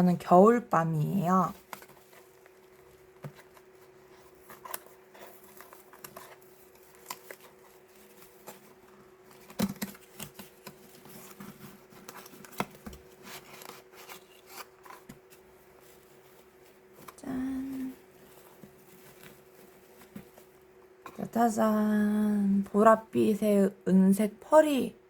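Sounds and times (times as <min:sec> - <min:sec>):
faint steady hum: 0:00.0 - 0:25.0
small handling clicks and rustles: 0:01.5 - 0:21.3.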